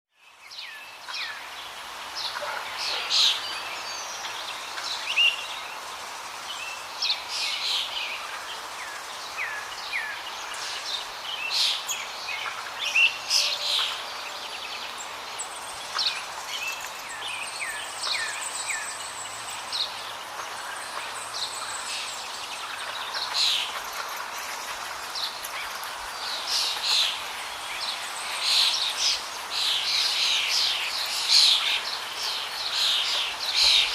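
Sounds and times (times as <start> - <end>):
steady background hiss: 0.2 - 33.9
birds chirping and calling: 0.5 - 33.9.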